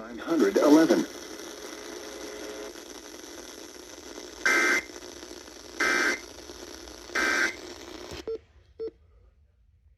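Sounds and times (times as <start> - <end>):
radio hiss: 0.0 - 8.3
digital data tone bursts: 4.4 - 5.1, 5.7 - 6.3, 7.1 - 7.8.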